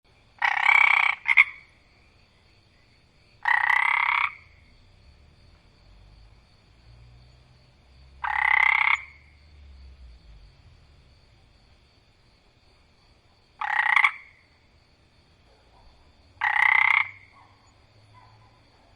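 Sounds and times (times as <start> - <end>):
frog croaking: 0.3 - 11.7, 13.5 - 14.8, 15.5 - 18.9.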